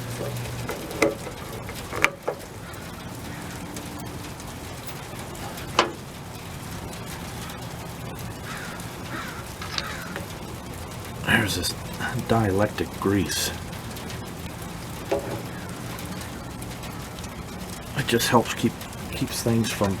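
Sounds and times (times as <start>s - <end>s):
steady low hum: 0.0s - 20.0s
tools clicking and knocking: 0.1s - 2.4s, 15.1s - 15.5s.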